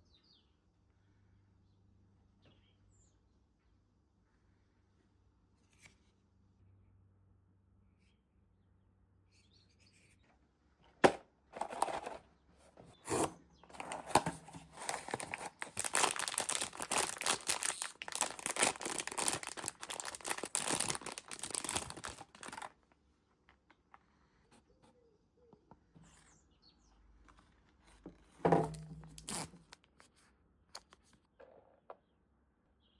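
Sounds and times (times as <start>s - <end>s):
packaging crinkling: 11.6s - 12.2s, 13.0s - 22.8s, 29.0s - 30.0s
packaging ripping: 13.1s - 22.7s, 29.0s - 29.9s
packaging snap: 13.1s - 22.7s.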